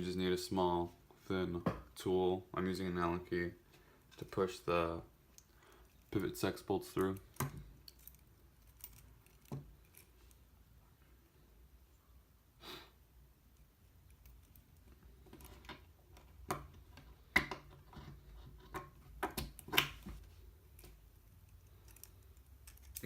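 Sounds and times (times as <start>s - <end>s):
short breath-like hiss: 12.6s - 13.0s.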